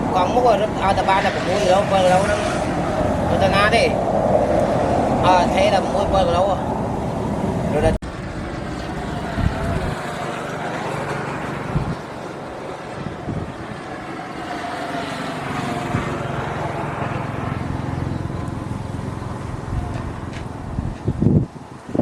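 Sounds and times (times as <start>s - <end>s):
engine running: 6.7s - 21.8s.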